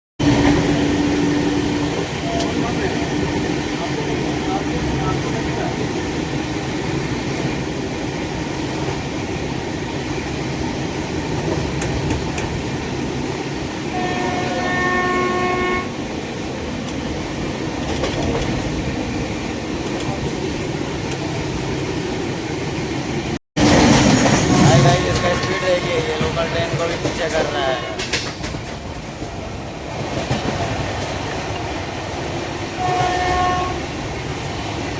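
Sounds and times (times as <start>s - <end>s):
train wheels rumbling on rails: 0.2s - 34.9s
train horn: 13.9s - 16.0s, 24.5s - 28.3s, 32.8s - 33.9s.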